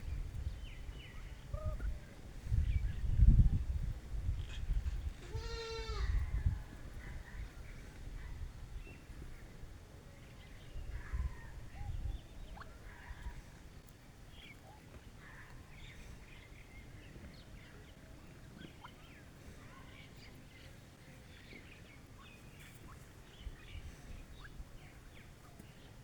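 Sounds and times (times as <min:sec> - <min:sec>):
faint bird chirps: 0:00.0 - 0:03.3, 0:10.2 - 0:26.0
low steady background noise: 0:00.0 - 0:26.0.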